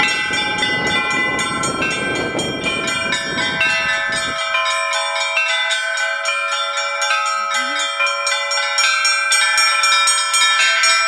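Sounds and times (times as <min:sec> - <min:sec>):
small church bells ringing: 0:00.0 - 0:11.0.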